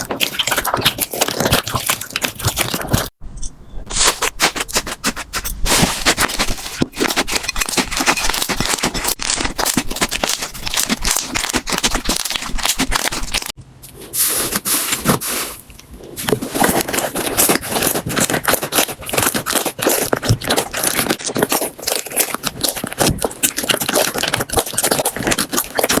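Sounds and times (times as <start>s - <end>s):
slime crackling and popping: 5.7s - 13.6s, 16.2s - 26.0s.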